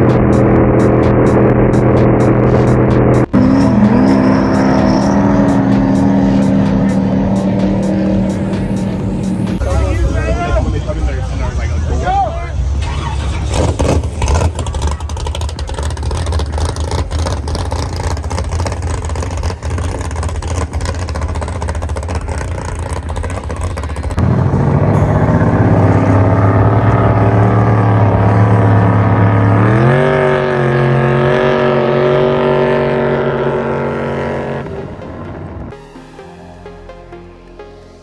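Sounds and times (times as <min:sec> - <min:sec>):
jet boat engine running: 0:00.0 - 0:36.6.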